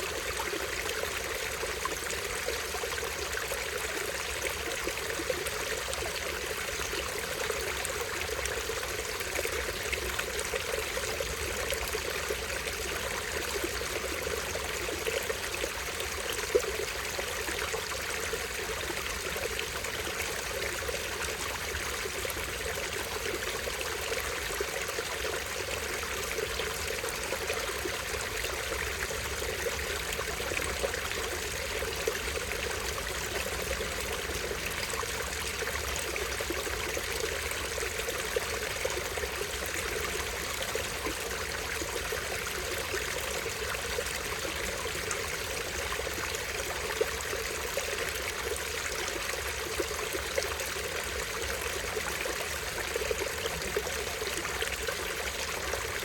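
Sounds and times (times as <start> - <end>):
small stream running: 0.0 - 56.0.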